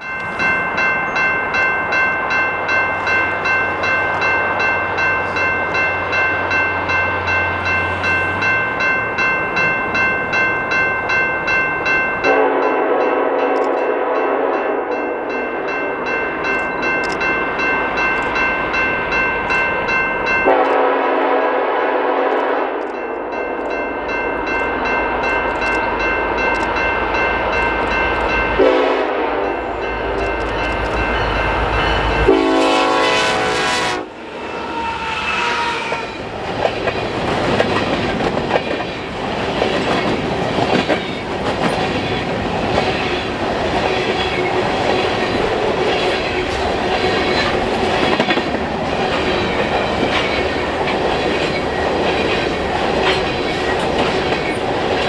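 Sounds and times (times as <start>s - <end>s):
locomotive horn blasts: 12.2s - 14.9s, 20.4s - 22.9s, 28.4s - 36.4s
train wheels clattering over rails: 23.2s - 55.0s.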